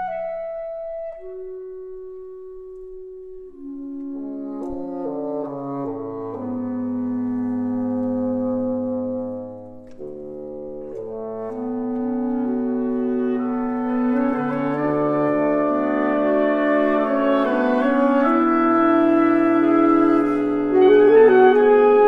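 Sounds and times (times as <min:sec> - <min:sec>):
woodwind ensemble chords: 0:00.0 - 0:22.0.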